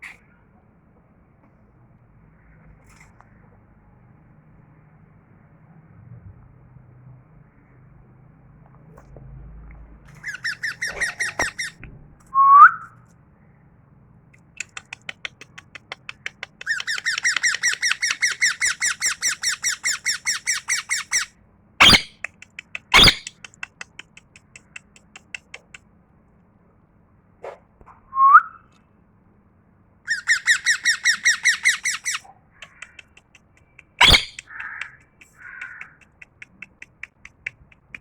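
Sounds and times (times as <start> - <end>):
parrot chattering: 10.2 - 11.8, 14.6 - 25.8, 30.1 - 38.0
parrot squawks: 10.2 - 11.8, 16.6 - 23.5, 30.1 - 33.1, 34.0 - 37.2
parrot whistle: 10.3 - 11.8, 12.4 - 12.9, 16.6 - 22.2, 22.9 - 23.4, 28.2 - 28.6, 30.1 - 32.2, 34.0 - 34.8.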